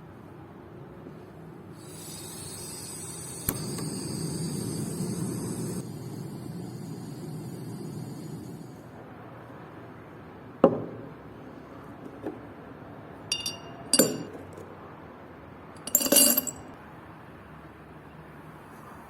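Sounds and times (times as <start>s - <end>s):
hard objects clinking and knocking: 13.3s - 14.5s, 15.8s - 16.7s.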